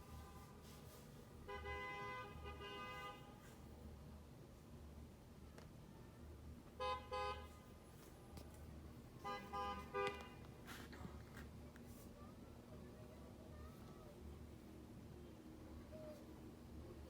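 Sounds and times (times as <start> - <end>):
car horns tooting: 1.4 - 3.4, 6.8 - 7.6, 9.2 - 10.6.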